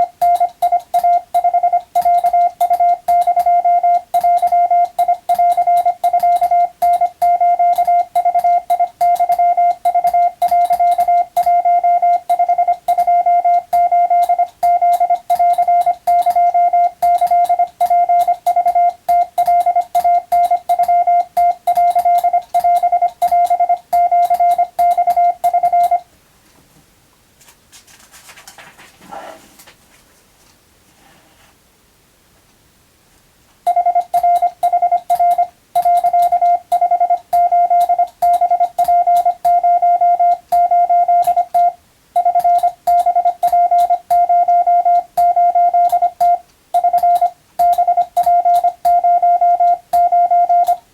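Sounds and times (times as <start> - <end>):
morse code beeping: 0.0 - 26.1, 33.7 - 50.8
faint rustling: 26.4 - 31.6.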